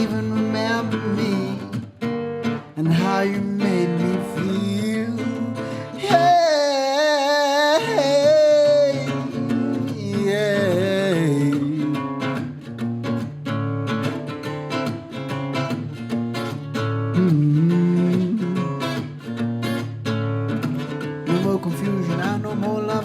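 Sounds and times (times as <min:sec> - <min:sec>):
person singing: 0:00.0 - 0:01.8, 0:02.8 - 0:12.4, 0:17.1 - 0:19.1, 0:21.3 - 0:23.0
acoustic guitar strumming: 0:00.0 - 0:23.0.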